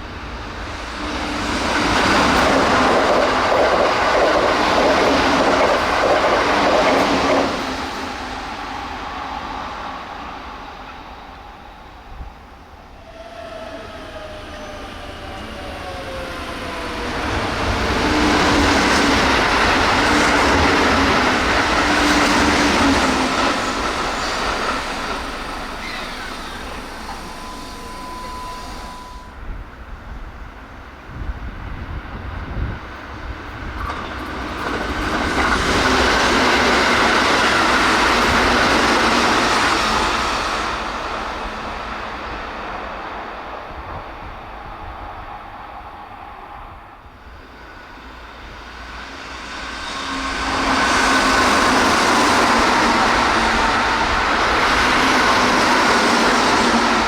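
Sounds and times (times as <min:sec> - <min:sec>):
falling train whine: 0:00.0 - 0:57.0
train passing with rushing: 0:00.0 - 0:57.0.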